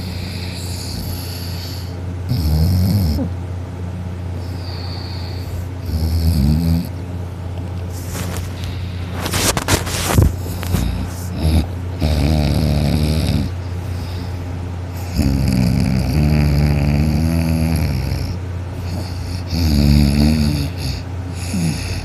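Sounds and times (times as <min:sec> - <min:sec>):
loud rattling snores: 0:00.0 - 0:03.3, 0:04.4 - 0:07.0, 0:10.5 - 0:14.2, 0:15.0 - 0:22.0.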